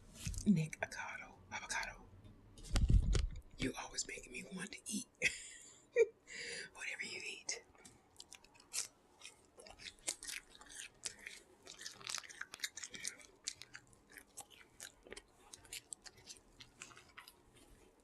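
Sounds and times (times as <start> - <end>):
person chewing food: 7.8 - 18.0.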